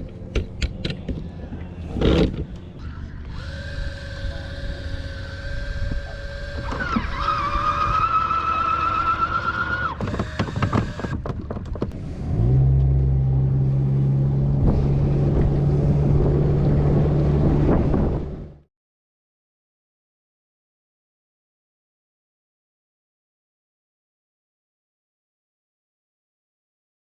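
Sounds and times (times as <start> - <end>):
outboard motor idling: 1.3 - 11.3.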